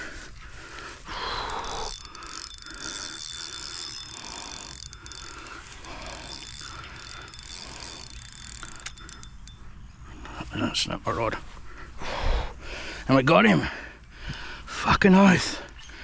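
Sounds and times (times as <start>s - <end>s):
fishing reel clicking: 0.8s - 9.9s.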